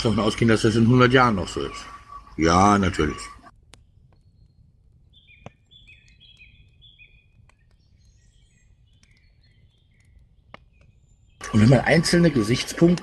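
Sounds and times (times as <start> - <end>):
small bird chirping: 0.0 - 12.2
faint sharp clicks: 3.6 - 4.3, 5.4 - 7.8, 8.9 - 11.0.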